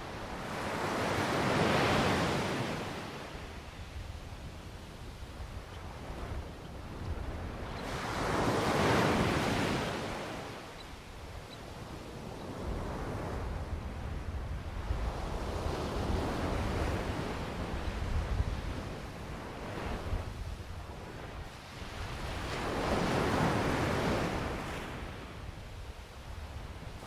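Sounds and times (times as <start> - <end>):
wind rumble on microphone: 0.0 - 27.0
ocean waves breaking: 7.8 - 10.6.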